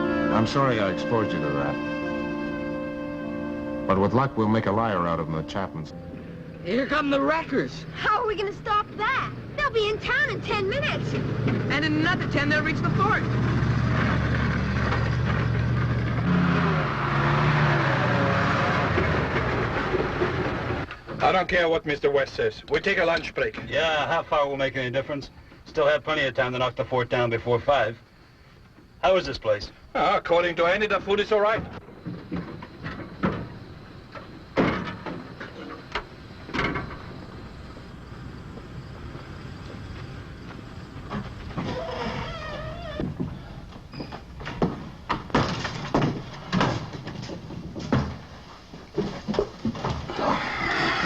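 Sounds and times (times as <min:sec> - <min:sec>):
heavy diesel engine running: 0:00.0 - 0:20.9, 0:31.8 - 0:41.8
knocks and thuds: 0:31.4 - 0:37.4, 0:43.0 - 0:50.2
low steady rumble: 0:35.2 - 0:42.8.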